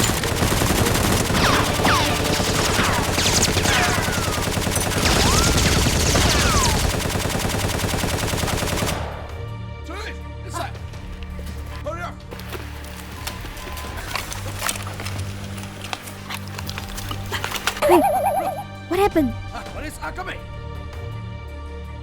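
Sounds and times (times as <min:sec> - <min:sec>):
rapid automatic gunfire: 0:00.0 - 0:09.4.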